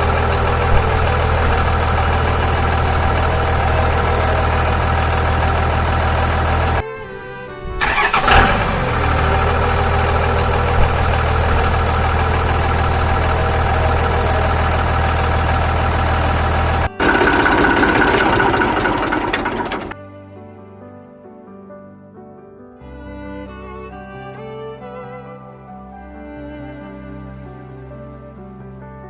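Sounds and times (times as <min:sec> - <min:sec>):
tractor diesel engine running: 0:00.0 - 0:06.8, 0:07.8 - 0:20.0
quiet music: 0:00.0 - 0:14.6, 0:19.9 - 0:29.0.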